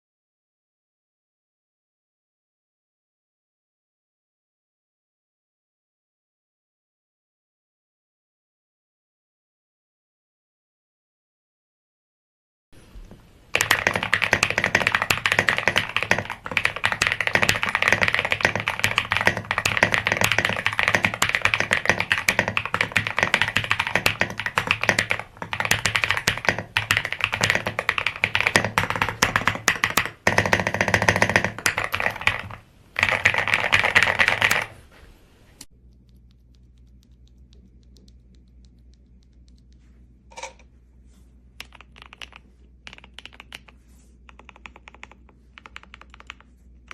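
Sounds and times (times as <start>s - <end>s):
faint low hum: 12.8s - 46.9s
typing on mechanical keyboard: 13.5s - 34.8s, 41.6s - 46.9s.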